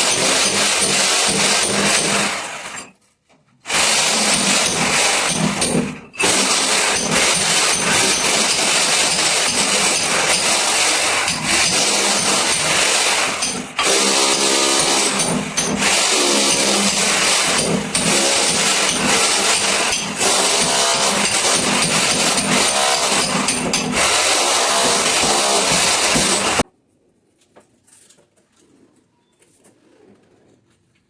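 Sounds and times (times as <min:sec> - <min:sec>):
power tool running: 0:03.7 - 0:26.6.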